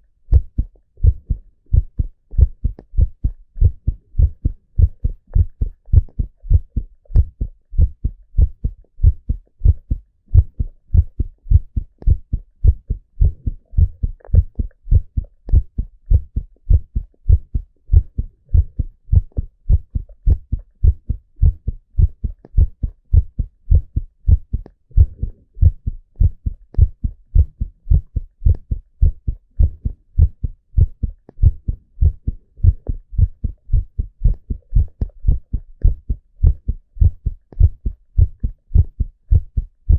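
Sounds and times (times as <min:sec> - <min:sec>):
heartbeat thuds: 0:00.0 - 0:39.9.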